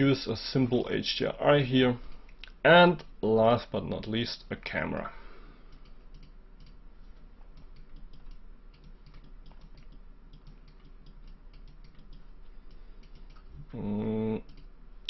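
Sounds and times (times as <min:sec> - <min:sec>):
faint low hum: 0:00.0 - 0:15.0
keyboard and mouse clicks: 0:05.7 - 0:06.8, 0:07.4 - 0:13.8, 0:14.4 - 0:14.8.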